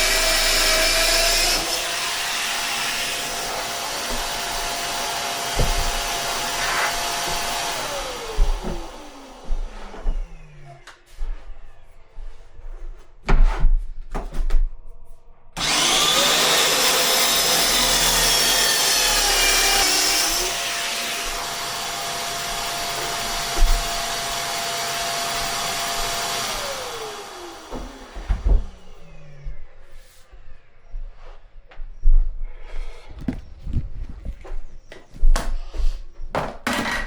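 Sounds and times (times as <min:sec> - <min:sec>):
electric power saw cutting: 0:00.0 - 0:09.7, 0:15.6 - 0:28.3.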